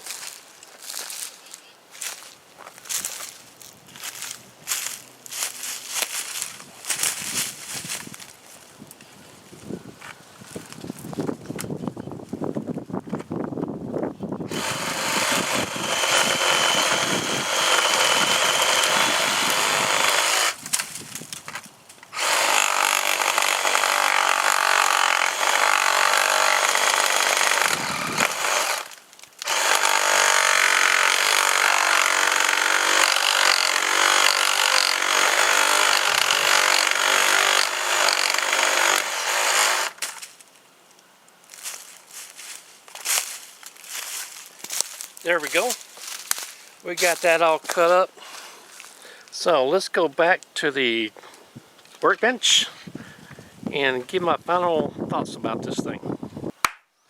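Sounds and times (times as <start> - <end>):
reciprocating saw cutting wood: 14.5 - 20.6, 22.1 - 40.0.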